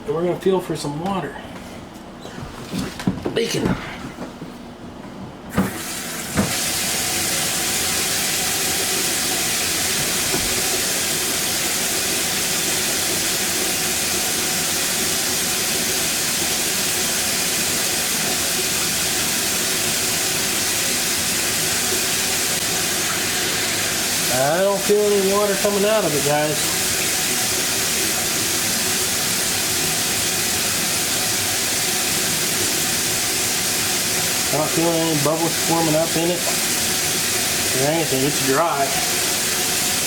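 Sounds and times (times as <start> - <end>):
water running into sink: 5.5 - 40.0
faucet knocks: 6.4 - 6.6.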